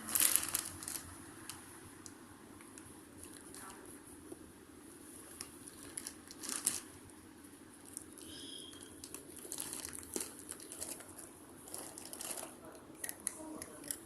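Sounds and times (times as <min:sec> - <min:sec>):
plastic wrappers crinkling: 0:00.0 - 0:01.7, 0:05.2 - 0:07.0, 0:07.8 - 0:14.0.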